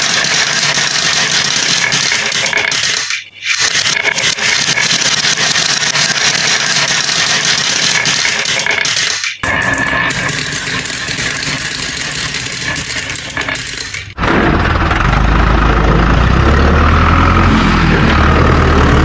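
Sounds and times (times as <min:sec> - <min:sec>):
toy vehicles rattling on plastic track: 0:00.0 - 0:14.2.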